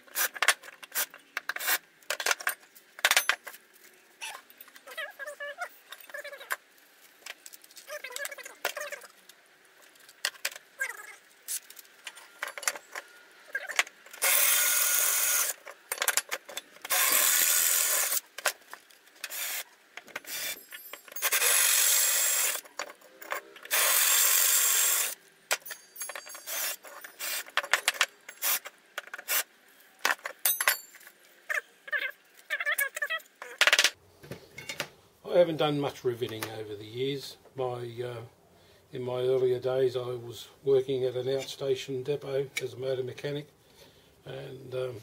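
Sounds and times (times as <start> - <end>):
metal tools clattering on workbench: 2.1 - 3.6, 20.6 - 21.3, 25.5 - 28.4, 30.0 - 31.1, 34.6 - 34.8.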